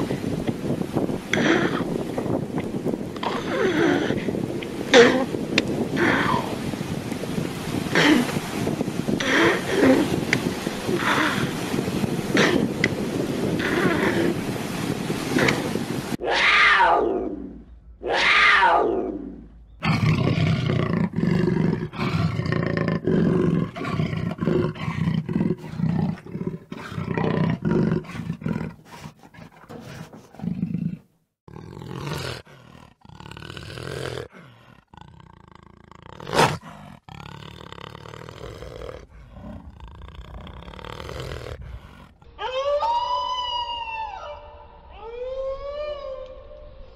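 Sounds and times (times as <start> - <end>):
long falling calls: 42.3 - 46.8.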